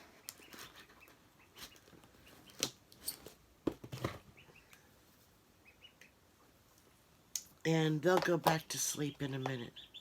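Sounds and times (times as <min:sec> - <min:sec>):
duckling peeps: 0:00.0 - 0:02.6, 0:04.2 - 0:04.9, 0:05.5 - 0:06.4, 0:09.0 - 0:10.0.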